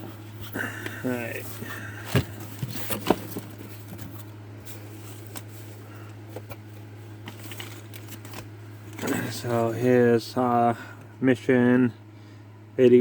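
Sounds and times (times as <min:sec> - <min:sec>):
low electrical hum: 0:00.0 - 0:13.0
paper and cardboard rustling: 0:00.1 - 0:09.8.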